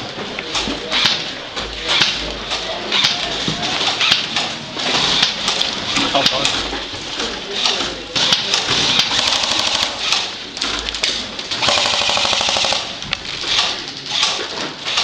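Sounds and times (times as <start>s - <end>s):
airsoft gun full-auto bursts: 9.0s - 10.3s, 11.6s - 13.0s.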